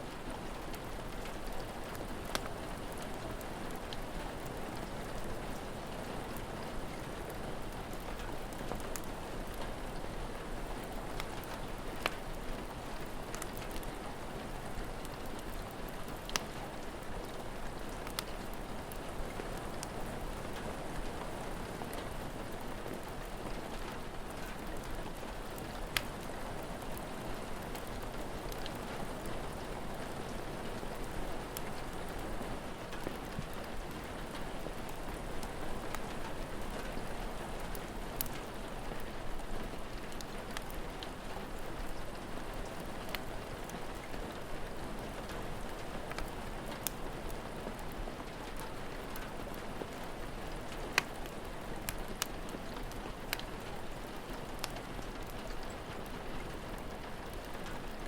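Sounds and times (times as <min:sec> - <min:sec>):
steady rain: 0:00.0 - 0:58.0
wood fire popping: 0:00.7 - 0:05.1, 0:14.8 - 0:20.7, 0:23.7 - 0:29.6, 0:32.9 - 0:41.6, 0:42.6 - 0:43.3, 0:45.7 - 0:47.0, 0:48.5 - 0:55.8.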